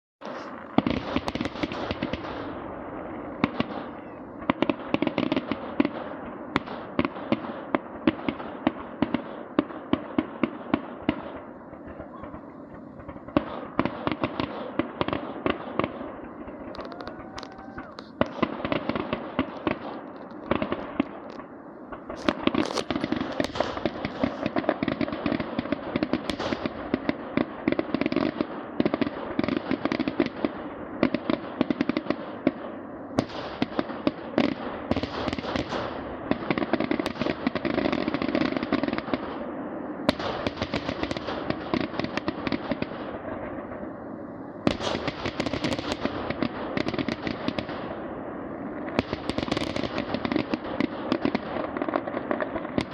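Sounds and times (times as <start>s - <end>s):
fireworks popping and crackling: 0.2s - 52.9s.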